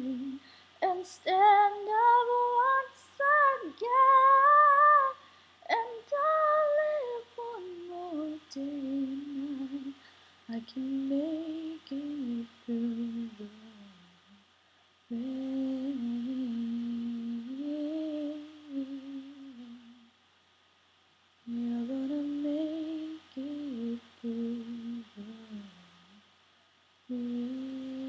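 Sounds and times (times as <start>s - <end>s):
person humming: 0.0s - 14.3s, 15.1s - 20.1s, 21.5s - 26.2s, 27.1s - 28.0s.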